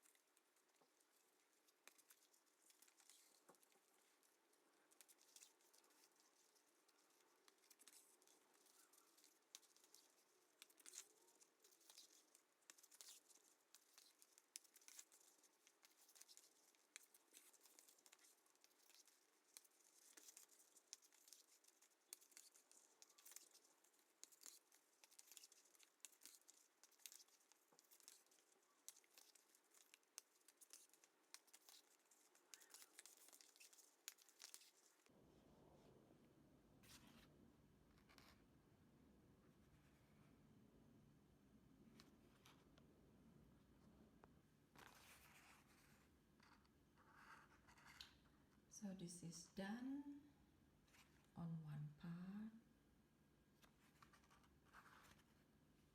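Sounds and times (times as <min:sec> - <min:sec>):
hands handling craft materials: 0:00.0 - 0:35.1, 0:43.7 - 0:48.7, 0:53.5 - 0:55.9.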